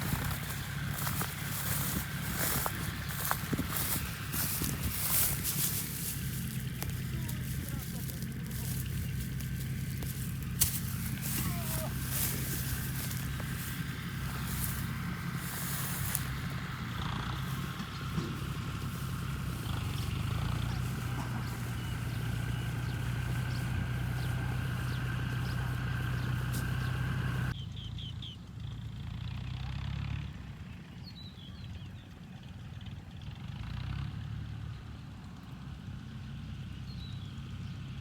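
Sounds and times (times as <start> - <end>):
motor humming: 0.0 - 27.5
faint uneven motor: 0.0 - 27.6.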